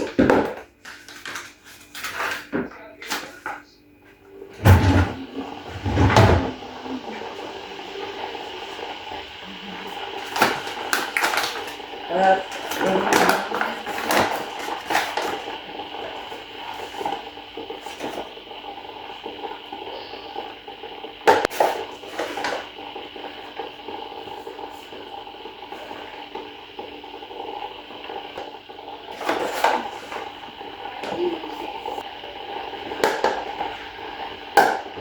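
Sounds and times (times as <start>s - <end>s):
faint hum: 1.9s - 21.2s.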